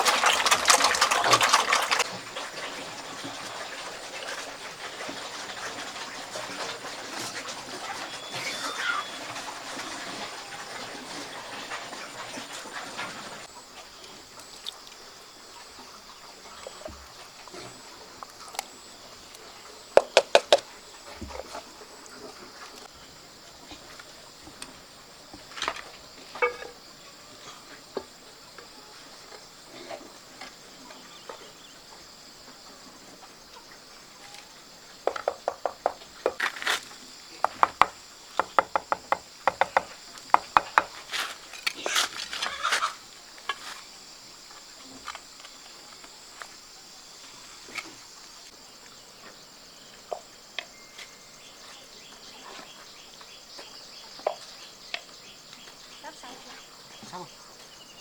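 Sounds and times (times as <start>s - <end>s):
sharp knocks: 20.0s - 20.7s, 35.0s - 36.5s, 37.4s - 41.0s
high insect chirring: 34.3s - 46.1s.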